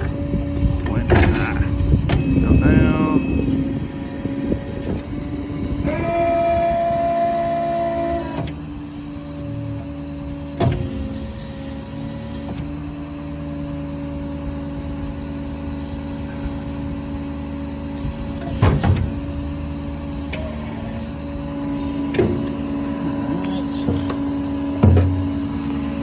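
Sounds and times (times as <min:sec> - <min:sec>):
crane motor whine: 0:00.0 - 0:26.0
low running hum: 0:00.0 - 0:26.0
sharp clunks: 0:24.8 - 0:25.3.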